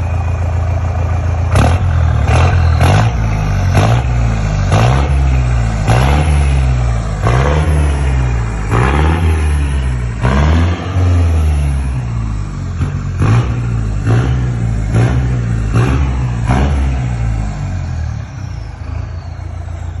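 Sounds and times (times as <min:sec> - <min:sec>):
engine idling: 0:00.0 - 0:20.0
pickup engine revving: 0:00.0 - 0:20.0.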